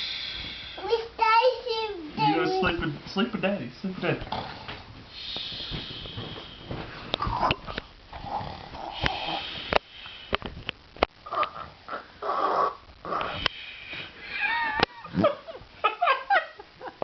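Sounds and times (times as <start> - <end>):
person snoring: 8.1 - 9.8, 11.3 - 13.6.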